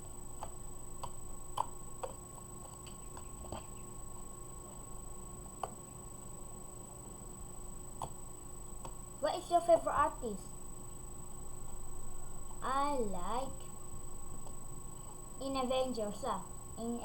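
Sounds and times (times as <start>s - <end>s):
faint background hum: 0.0s - 17.0s.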